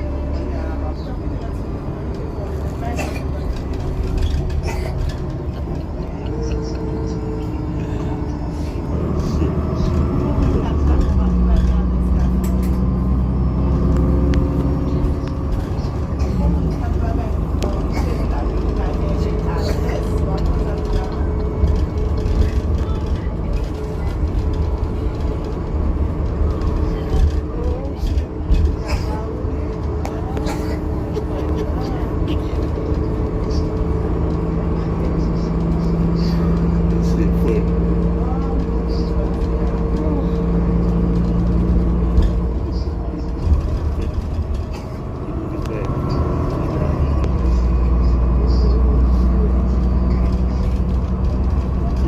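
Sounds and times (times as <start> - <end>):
bus engine rumble: 0.0 - 52.0.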